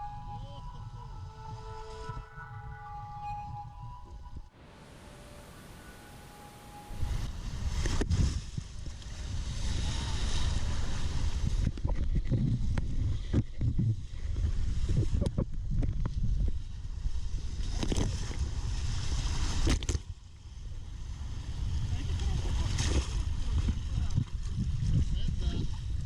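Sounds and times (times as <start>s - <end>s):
wind buffeting microphone: 20.8s - 26.0s.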